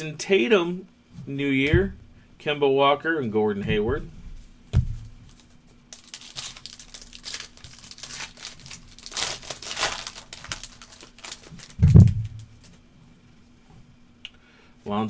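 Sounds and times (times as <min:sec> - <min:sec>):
heavy thump: 0:01.6 - 0:02.2, 0:03.6 - 0:05.3, 0:11.8 - 0:12.6
wrapper tearing and crinkling: 0:05.3 - 0:12.8.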